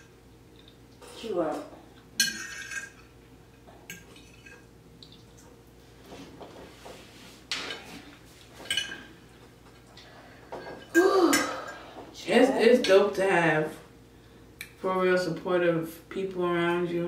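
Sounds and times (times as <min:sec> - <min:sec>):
utensils clinking on dishes: 0:02.2 - 0:03.1, 0:08.6 - 0:09.9.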